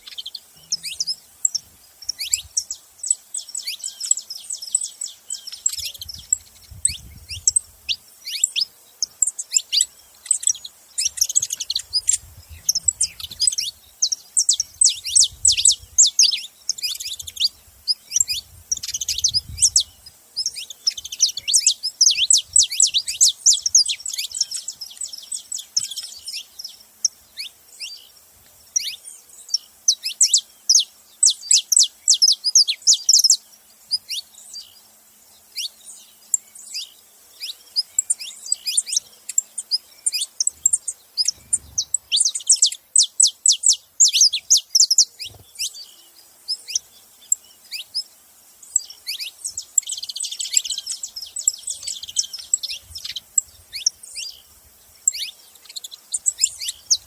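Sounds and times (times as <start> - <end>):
finch chirping: 0.0 - 34.8, 35.4 - 57.0.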